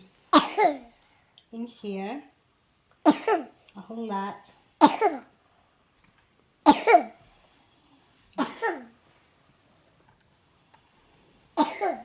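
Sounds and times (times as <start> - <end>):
person coughing: 0.4 - 0.8, 3.1 - 3.5, 4.8 - 5.3, 6.7 - 7.2, 8.4 - 8.9, 11.6 - 12.0.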